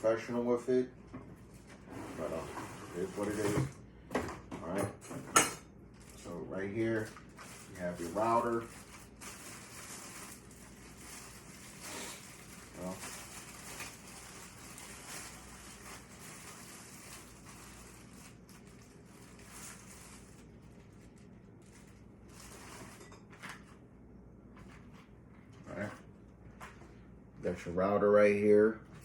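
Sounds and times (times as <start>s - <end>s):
packaging rustling: 5.9s - 23.8s.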